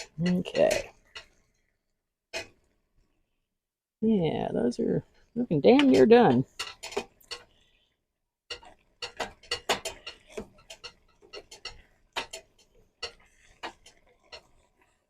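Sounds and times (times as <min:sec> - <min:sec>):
spoon scraping a pan: 0:00.0 - 0:01.7, 0:05.2 - 0:07.8, 0:08.5 - 0:15.0.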